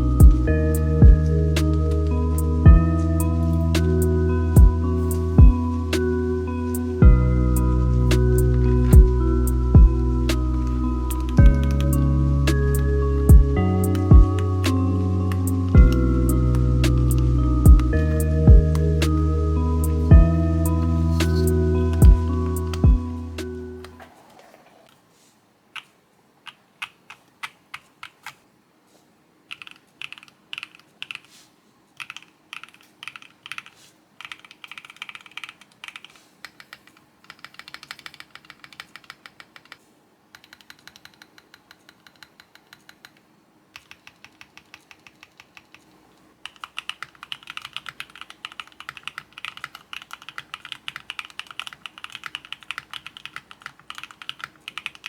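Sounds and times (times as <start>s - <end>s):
mechanical keyboard typing: 10.3s - 12.1s, 13.8s - 18.0s, 25.8s - 28.4s, 29.5s - 31.3s, 32.0s - 55.0s.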